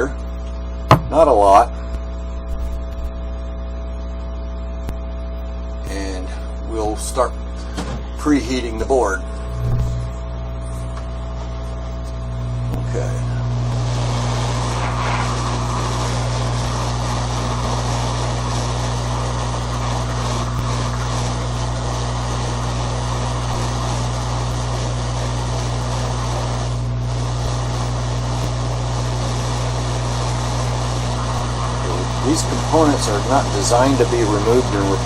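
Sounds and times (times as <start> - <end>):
low steady hum: 0.0 - 35.0
hot air blower rushing: 13.7 - 35.0.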